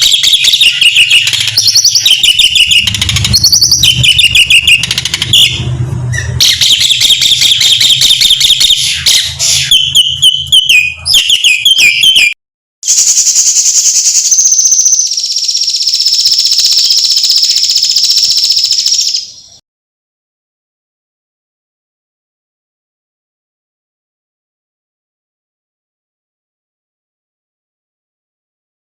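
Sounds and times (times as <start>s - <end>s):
rapid high-pitched bird trill: 0.0s - 19.6s
starling whistling and chattering: 0.0s - 19.6s.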